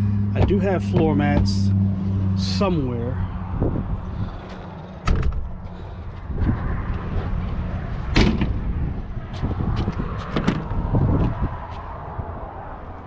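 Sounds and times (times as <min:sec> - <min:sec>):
steady low rumble: 0:00.0 - 0:11.6
sharp knocks and clunks: 0:00.4 - 0:01.8, 0:04.5 - 0:05.5, 0:08.1 - 0:08.6.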